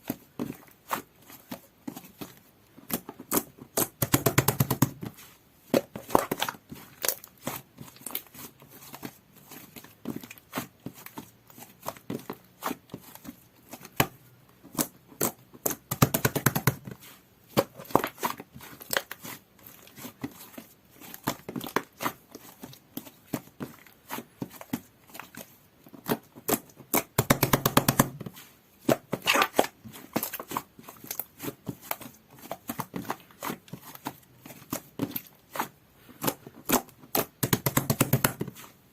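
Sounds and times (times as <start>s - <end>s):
slime squishing with wet clicks: 5.8s - 16.7s.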